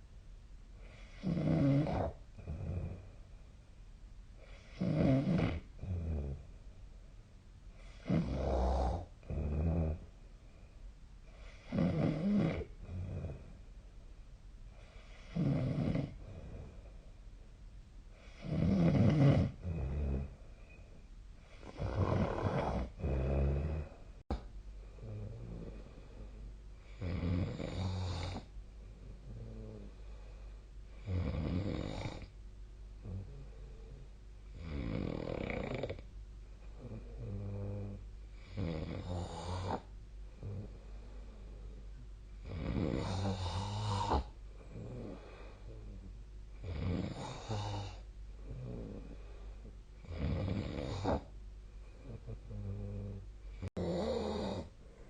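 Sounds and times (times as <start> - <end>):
person snoring: 0.9 - 3.0, 4.4 - 6.4, 7.8 - 10.0, 11.4 - 13.5, 15.0 - 16.8, 18.2 - 20.4, 21.5 - 24.4, 42.4 - 46.0, 46.6 - 49.3, 52.0 - 54.7.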